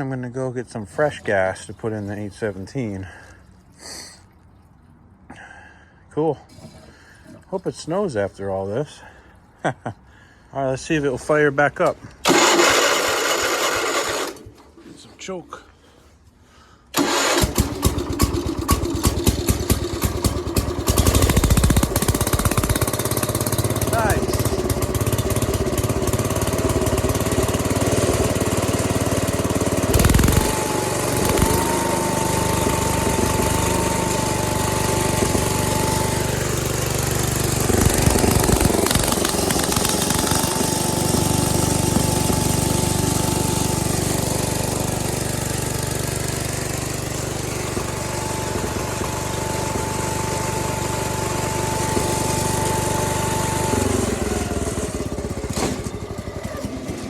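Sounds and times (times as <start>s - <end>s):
snowblower high whine: 12.2s - 14.4s, 17.0s - 57.0s
tractor engine running: 12.2s - 14.8s, 17.0s - 57.0s.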